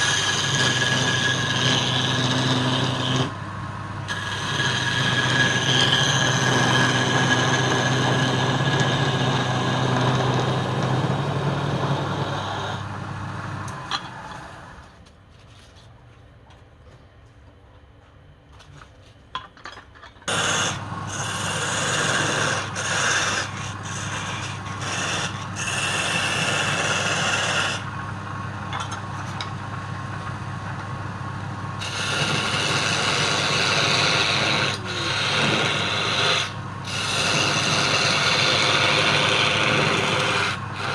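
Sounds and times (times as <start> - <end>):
turning tool scraping wood: 0.0 - 3.4, 4.1 - 14.8, 20.2 - 28.1, 31.8 - 40.9
wood lathe motor hum: 0.0 - 14.8, 20.3 - 40.9.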